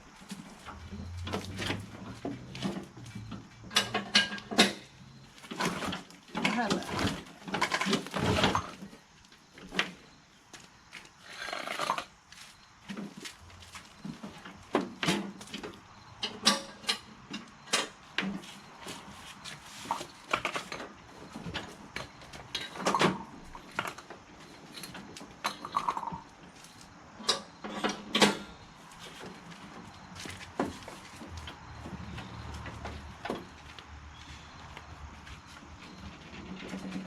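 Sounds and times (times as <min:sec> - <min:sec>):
metal clanks and knocks: 0:01.2 - 0:08.8, 0:27.2 - 0:28.6.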